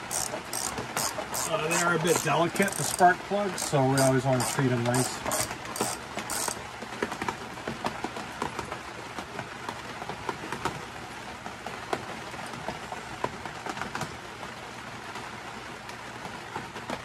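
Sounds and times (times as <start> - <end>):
irregular drips and ticks: 0.0 - 7.4
steady rain falling: 0.0 - 17.0.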